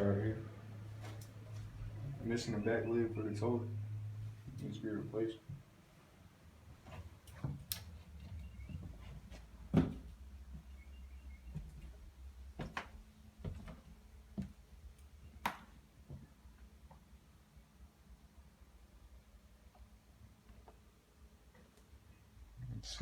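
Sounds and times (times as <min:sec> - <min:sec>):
low hum: 0:00.0 - 0:05.1.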